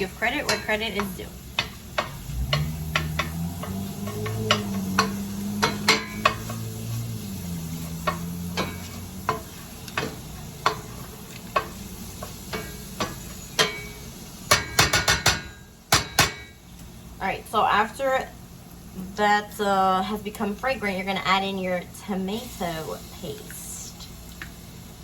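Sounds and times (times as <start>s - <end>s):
onions sizzling in oil: 0.0s - 25.0s
spoon clicking against pan: 0.5s - 6.7s.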